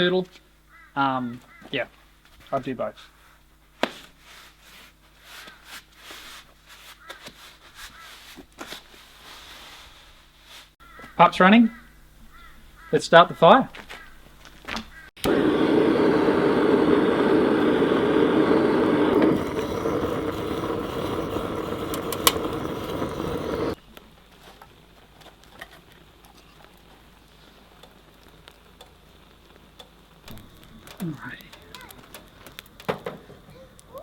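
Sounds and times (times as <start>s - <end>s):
stove fire rushing draught: 15.2s - 23.8s, 24.4s - 34.0s
fire crackling: 15.2s - 34.0s
faint ticks: 27.3s - 29.1s.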